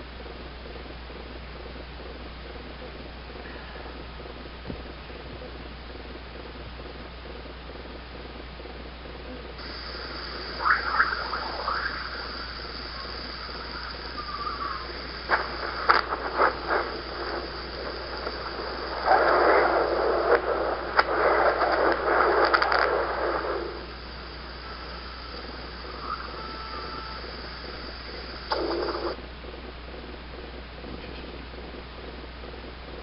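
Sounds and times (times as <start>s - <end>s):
radio static whine: 0.0s - 33.0s
hissing static: 9.4s - 33.0s
crackles and clicks: 9.5s - 29.2s.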